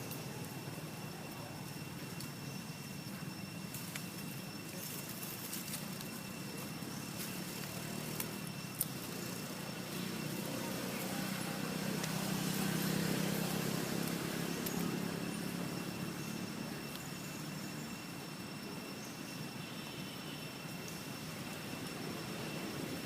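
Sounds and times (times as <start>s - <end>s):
vehicle engine and tyres passing: 7.0s - 16.7s.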